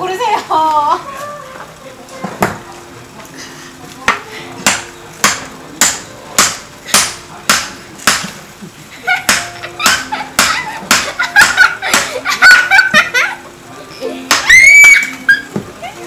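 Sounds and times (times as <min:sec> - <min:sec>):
people talking: 0:00.0 - 0:06.4, 0:07.2 - 0:16.0
sharp slaps: 0:04.7 - 0:08.4
people laughing: 0:08.2 - 0:16.0.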